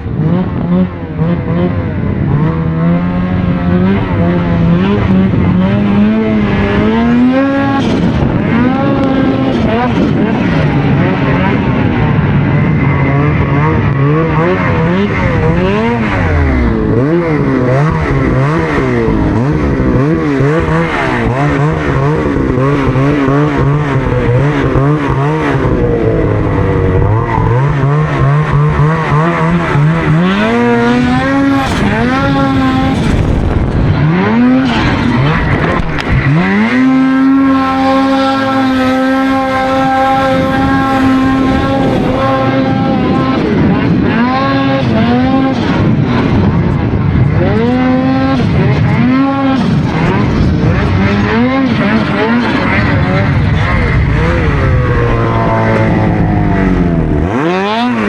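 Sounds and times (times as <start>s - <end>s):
snowmobile engine revving: 0.0s - 58.0s.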